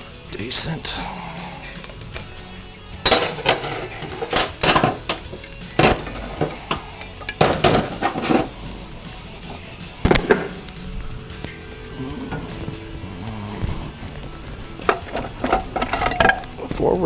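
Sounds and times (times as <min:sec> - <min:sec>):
metal plates clanking: 0:03.0 - 0:17.0.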